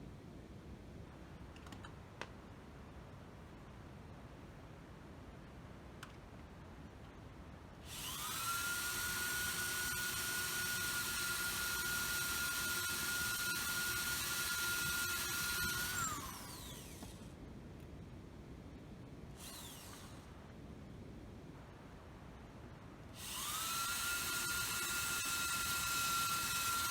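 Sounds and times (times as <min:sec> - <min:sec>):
drill whining while drilling metal: 0:07.8 - 0:17.3, 0:19.4 - 0:20.4, 0:23.2 - 0:26.9.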